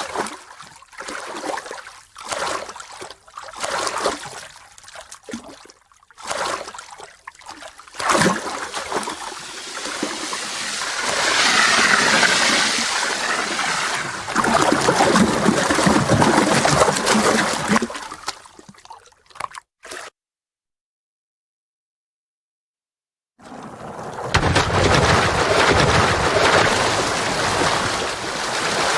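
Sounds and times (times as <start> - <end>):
water splashing and gurgling: 0.0 - 20.1, 23.4 - 28.9.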